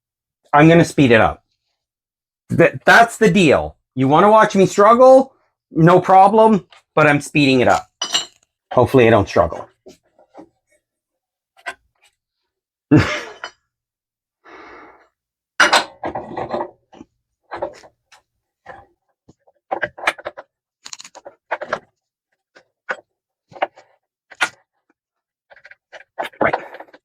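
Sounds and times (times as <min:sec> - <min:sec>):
knocks clinks and scrapes of metal parts: 0:06.6 - 0:10.9, 0:11.6 - 0:12.2, 0:15.6 - 0:27.0.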